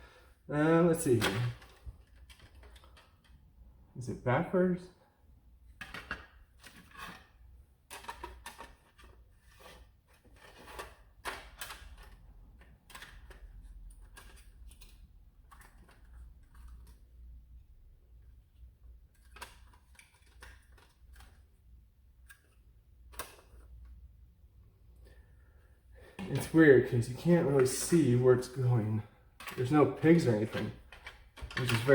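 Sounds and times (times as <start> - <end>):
small parts clicking and knocking: 1.2 - 3.5, 10.2 - 17.2, 29.4 - 31.9.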